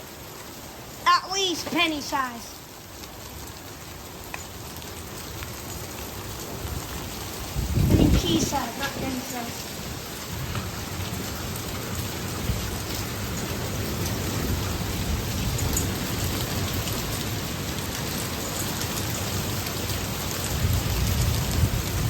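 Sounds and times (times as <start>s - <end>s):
heavy rain and hail: 0.0s - 22.0s.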